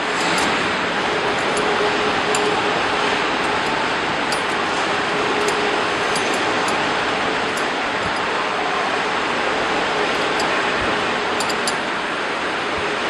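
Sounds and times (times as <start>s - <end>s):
faint hum: 0.0s - 13.0s.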